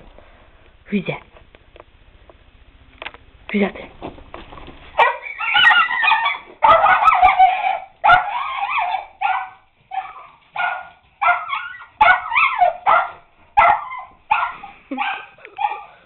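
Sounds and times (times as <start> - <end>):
dog barking: 5.0 - 16.0.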